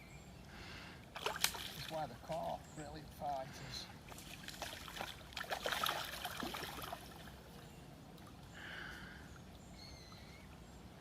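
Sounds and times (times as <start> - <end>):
water splashing and dripping: 1.1 - 2.7, 4.0 - 8.5.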